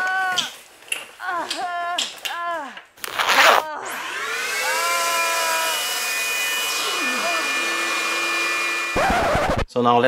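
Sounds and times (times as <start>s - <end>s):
vacuum cleaner running: 3.9s - 9.5s.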